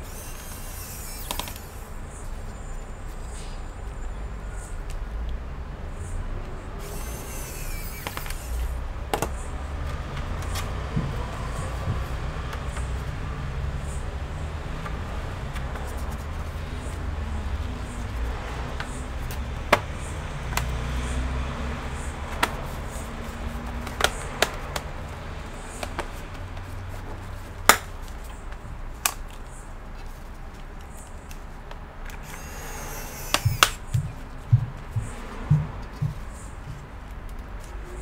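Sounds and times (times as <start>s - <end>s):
clicks and taps of laptop parts: 23.8s - 26.4s.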